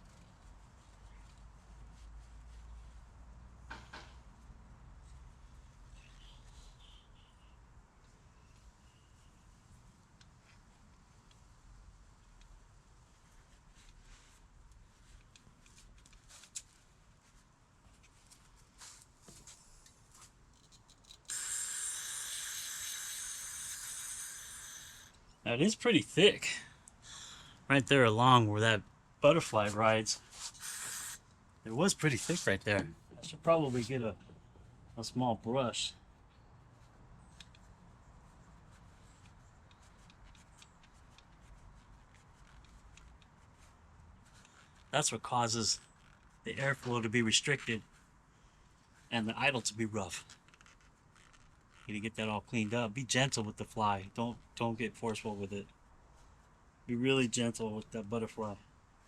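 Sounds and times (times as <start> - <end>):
faint small clicks and rubbing: 0.0 - 3.0, 12.1 - 21.3, 36.2 - 45.0, 45.8 - 48.1, 50.0 - 52.0
aerosol can spraying: 21.3 - 25.1, 30.4 - 31.2.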